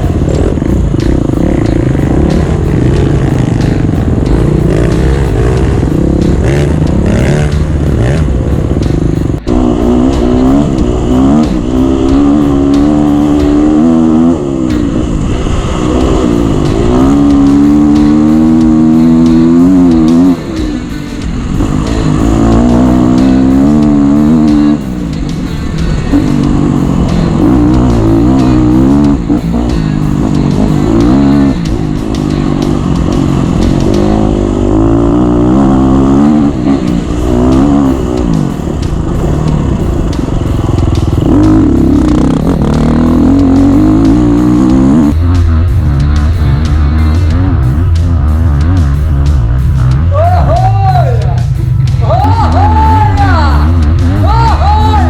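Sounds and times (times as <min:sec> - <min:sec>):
dirt bike engine revving: 0:00.0 - 0:55.0.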